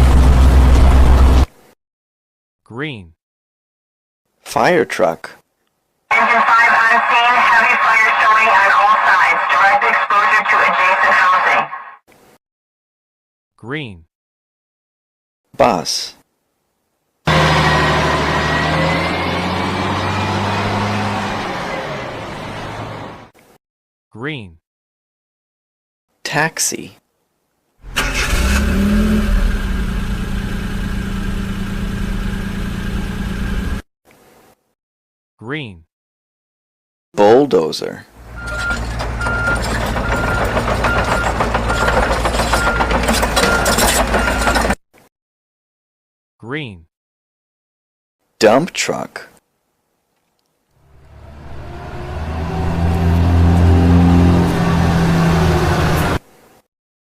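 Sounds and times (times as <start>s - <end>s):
car engine starting and running: 0.0s - 1.5s, 17.3s - 23.4s, 27.8s - 33.8s, 38.2s - 44.8s, 50.8s - 56.2s.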